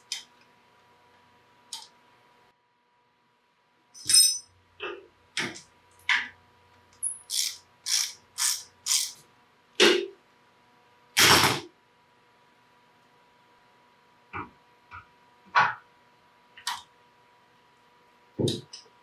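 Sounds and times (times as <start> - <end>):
hand ratchet clicking: 7.3 - 9.2.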